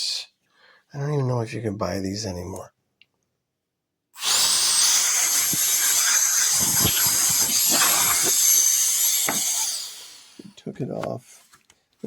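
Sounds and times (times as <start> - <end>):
electric air duster whining: 4.2 - 10.6.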